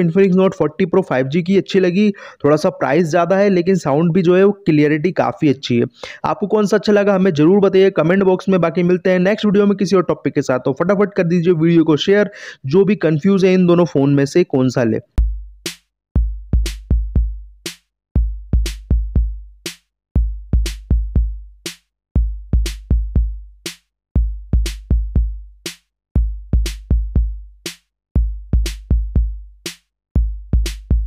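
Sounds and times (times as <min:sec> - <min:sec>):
electronic drum-machine beat: 0:15.1 - 0:31.0.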